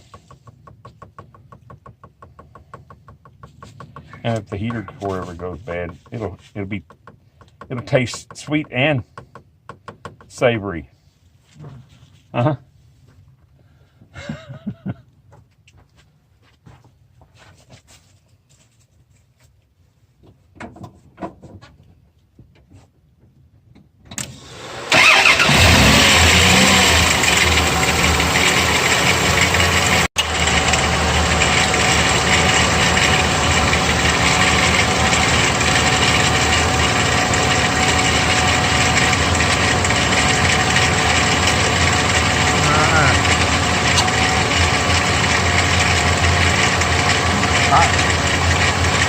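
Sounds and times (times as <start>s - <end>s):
truck engine starting and idling: 24.1s - 49.0s.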